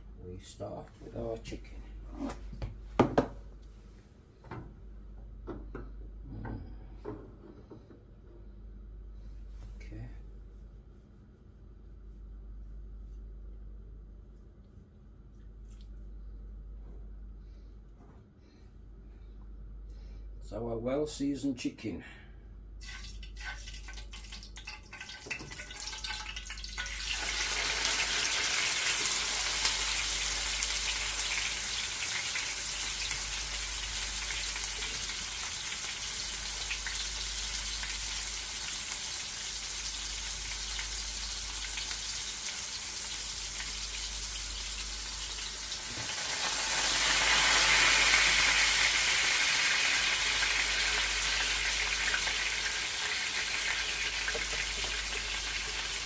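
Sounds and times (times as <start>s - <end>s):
chicken sizzling in hot oil: 22.8s - 56.0s.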